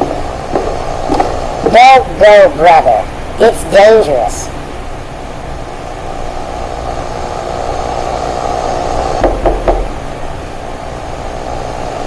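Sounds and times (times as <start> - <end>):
low droning ambience: 0.0 - 12.0
knocks on wooden door: 9.2 - 10.1.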